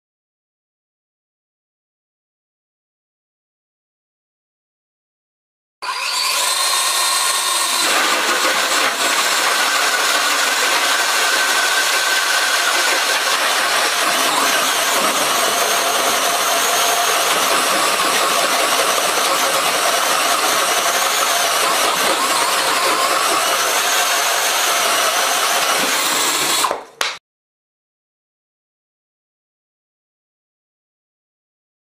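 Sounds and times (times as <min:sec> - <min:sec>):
cordless drill cutting board: 0:05.8 - 0:27.0.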